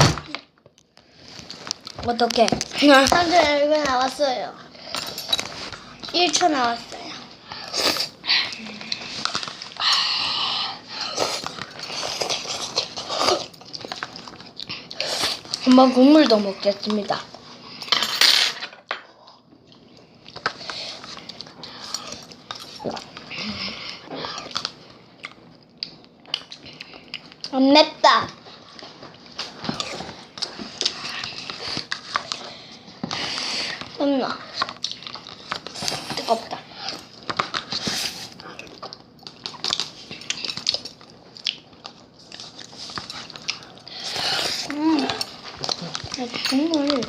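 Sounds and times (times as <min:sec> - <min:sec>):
chewing noodles: 0:07.6 - 0:17.6, 0:28.4 - 0:47.0.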